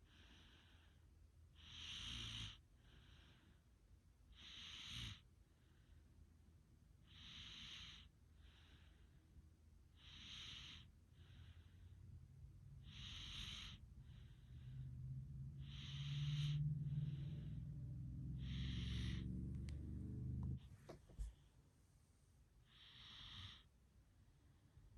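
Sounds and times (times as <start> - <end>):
person breathing while asleep: 0.0 - 6.2, 7.0 - 19.8, 22.6 - 23.8
low hum: 13.8 - 21.3.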